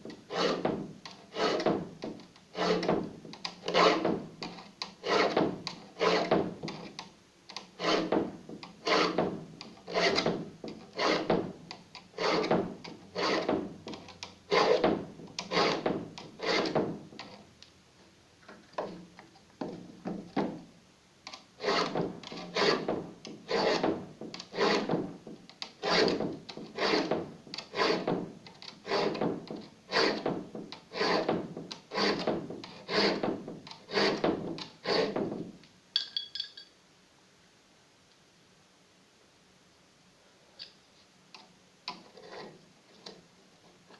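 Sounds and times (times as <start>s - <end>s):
metal file rasping on saw teeth: 0.3s - 0.7s, 1.3s - 1.7s, 2.5s - 2.9s, 3.6s - 4.1s, 5.0s - 5.4s, 6.0s - 6.4s, 7.8s - 8.2s, 8.8s - 9.2s, 9.9s - 10.3s, 10.9s - 11.3s, 12.2s - 13.6s, 14.5s - 14.8s, 15.4s - 15.8s, 16.4s - 16.8s, 21.6s - 22.9s, 23.5s - 25.0s, 25.8s - 29.2s, 29.9s - 30.3s, 30.9s - 35.2s.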